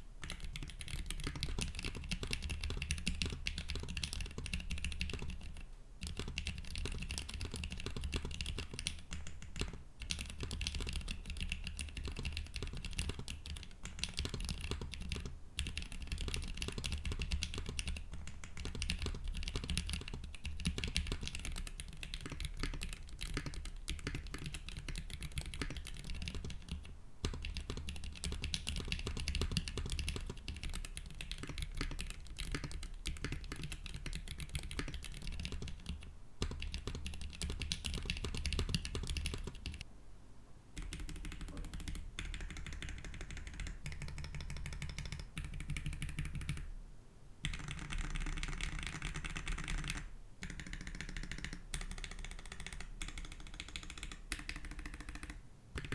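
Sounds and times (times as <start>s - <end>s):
mechanical keyboard typing: 0.2s - 39.8s, 40.8s - 46.7s, 47.4s - 55.9s.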